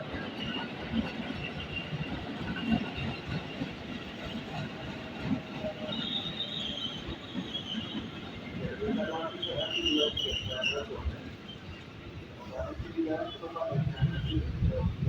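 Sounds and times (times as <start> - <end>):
train rumble: 0.0 - 15.0
faint high squeal: 5.8 - 8.2.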